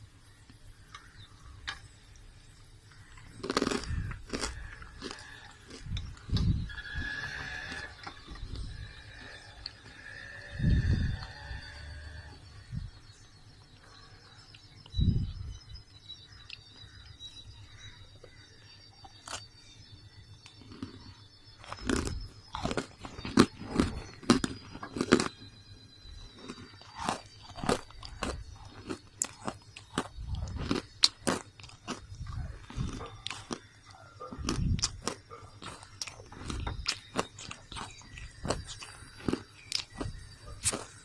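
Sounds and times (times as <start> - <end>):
person crunching on slate: 3.0 - 10.3, 20.6 - 25.4, 26.3 - 41.0.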